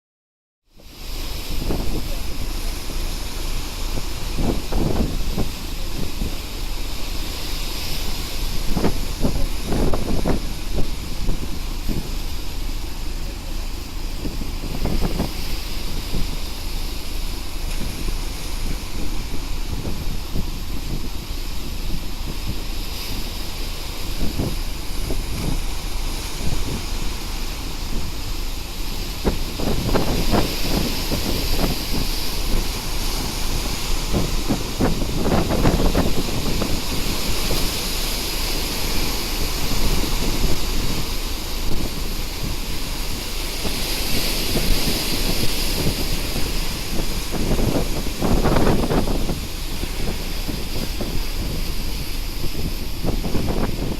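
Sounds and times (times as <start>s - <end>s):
rush of wind and sea: 0.6s - 53.9s
wind buffeting microphone: 0.8s - 53.9s.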